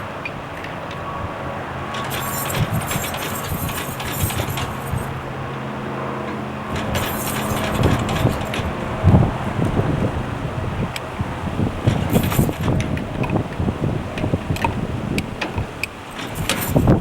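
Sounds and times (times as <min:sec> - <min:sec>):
hay baler engine running: 0:01.1 - 0:17.0
baler clatter: 0:01.9 - 0:05.3, 0:06.7 - 0:10.1, 0:11.6 - 0:17.0.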